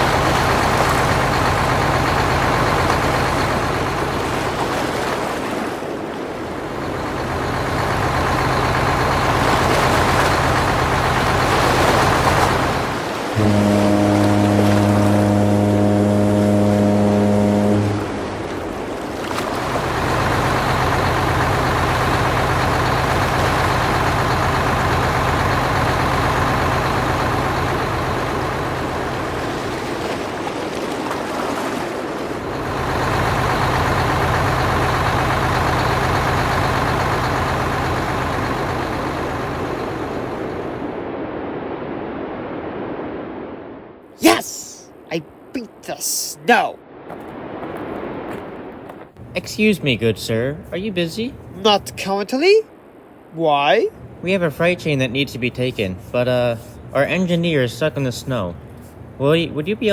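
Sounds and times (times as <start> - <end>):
train running with low hum: 0.0 - 41.0, 48.3 - 52.2, 52.8 - 59.9
train horn chord: 13.4 - 18.6.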